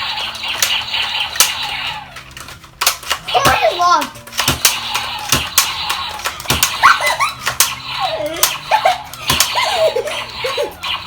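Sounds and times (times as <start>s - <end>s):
toy blaster clicks: 0.0s - 9.7s.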